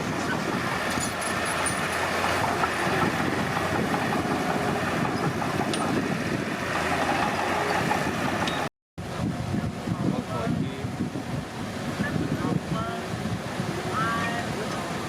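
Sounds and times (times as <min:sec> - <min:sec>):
bulldozer engine rumbling: 0:00.0 - 0:09.9.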